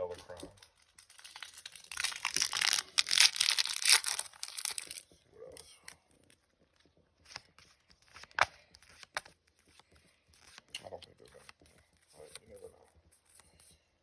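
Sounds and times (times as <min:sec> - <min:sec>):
foil wrapper crinkling and tearing: 0:00.6 - 0:05.0.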